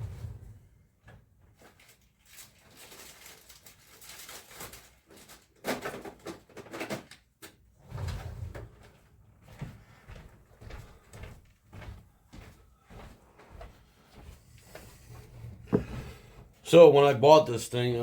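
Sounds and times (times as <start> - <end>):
plastic parts clicking and scraping: 1.7 - 7.6
dull thump: 15.1 - 16.3.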